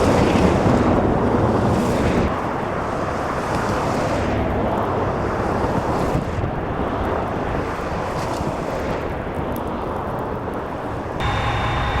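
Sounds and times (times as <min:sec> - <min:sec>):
vehicle road and engine noise: 0:00.0 - 0:12.0
high whining tones: 0:11.2 - 0:12.0.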